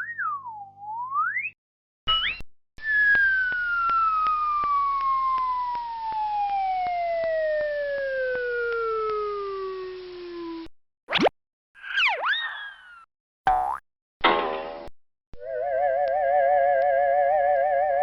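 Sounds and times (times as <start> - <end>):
quick upward zip: 11.1 - 11.3
cartoon falling whistle: 11.1 - 13.8.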